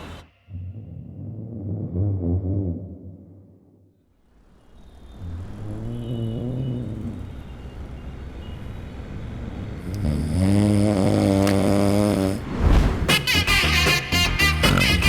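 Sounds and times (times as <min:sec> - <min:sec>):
low hum of a car: 0:04.4 - 0:12.4
man snoring heavily: 0:05.2 - 0:07.3, 0:09.8 - 0:12.5.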